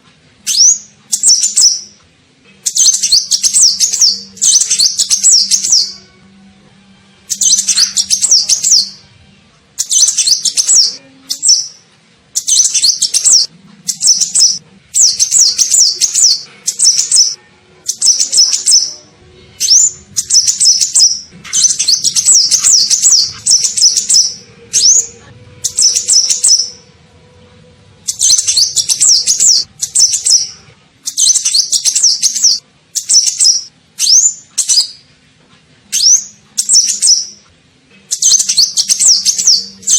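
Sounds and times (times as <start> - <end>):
sunbird twittering chirps: 2.7 - 6.0, 12.4 - 18.9, 19.6 - 26.8, 28.1 - 30.5.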